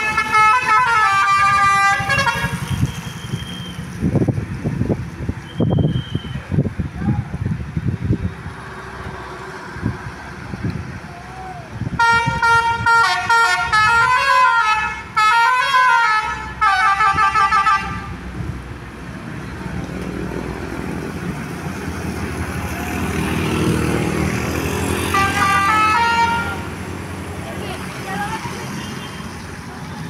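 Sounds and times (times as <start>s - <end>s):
multi-tone bus horn tune: 0.0s - 3.5s, 12.0s - 18.2s, 24.9s - 26.8s
road noise: 0.0s - 30.0s
vehicle engine: 0.0s - 30.0s.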